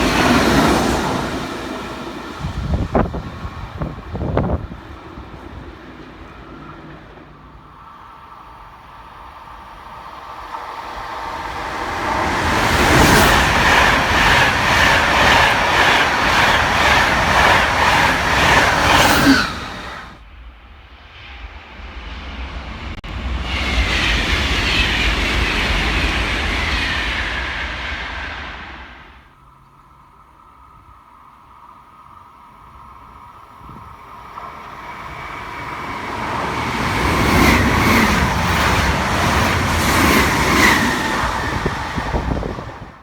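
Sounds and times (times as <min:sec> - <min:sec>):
passing train whine: 0:00.0 - 0:43.0
train wheel clicks: 0:12.1 - 0:20.1.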